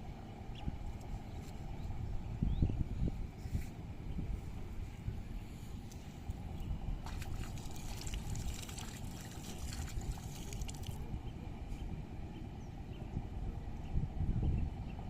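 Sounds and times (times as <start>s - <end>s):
wind rumble on microphone: 0.0s - 15.0s
water splashing and trickling: 7.0s - 11.1s.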